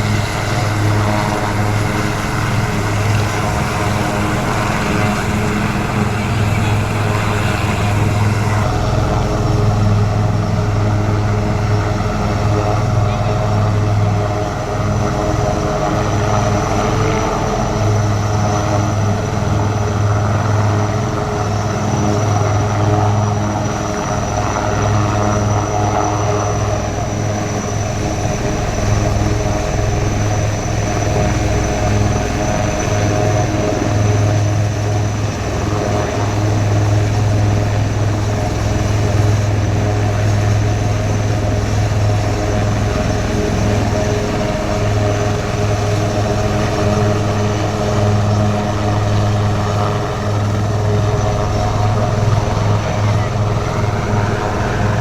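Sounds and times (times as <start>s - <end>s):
helicopter low drone: 0.0s - 55.0s
high-pitched whine: 41.2s - 55.0s.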